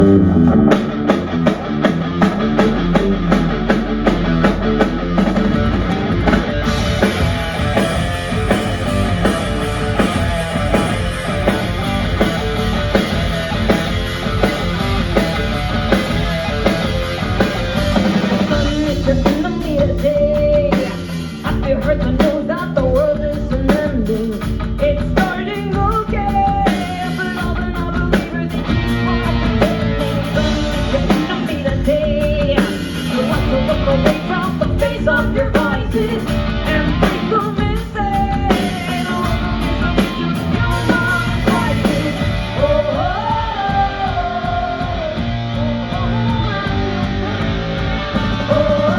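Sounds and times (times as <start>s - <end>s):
bass guitar: 0.0s - 48.9s
distorted electric guitar: 0.0s - 48.9s
drum kit: 0.0s - 48.9s
person singing: 18.0s - 48.9s.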